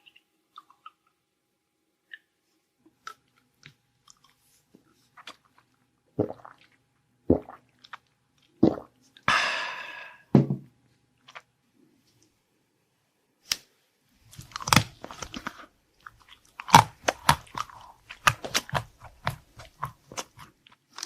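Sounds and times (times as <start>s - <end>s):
close eating and chewing: 2.1s - 9.3s, 11.2s - 11.5s, 14.2s - 21.0s
wet mouth clicks: 16.2s - 20.5s.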